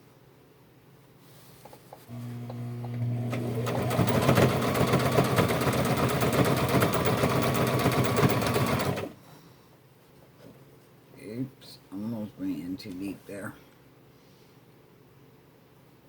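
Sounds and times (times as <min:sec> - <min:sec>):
sewing machine stitching: 0:02.1 - 0:09.2.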